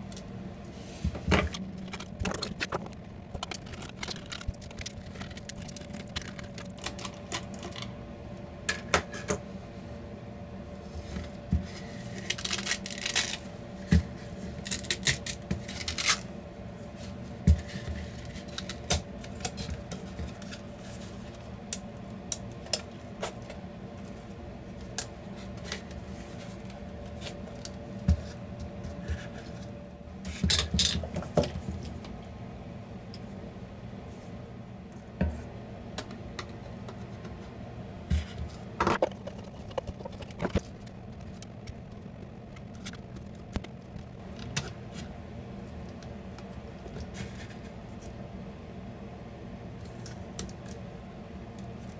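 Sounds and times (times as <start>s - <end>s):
faint steady hum: 0.0s - 51.9s
plastic parts being handled: 1.2s - 7.9s, 12.1s - 13.5s, 38.8s - 44.7s.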